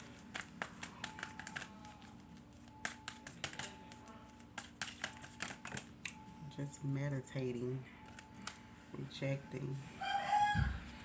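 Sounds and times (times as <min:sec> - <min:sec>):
cards clicking and tapping on table: 0:00.0 - 0:05.9.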